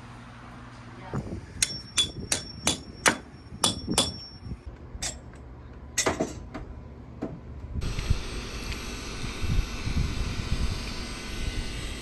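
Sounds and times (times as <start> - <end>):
hammer blows with metallic ring: 1.6 - 5.3.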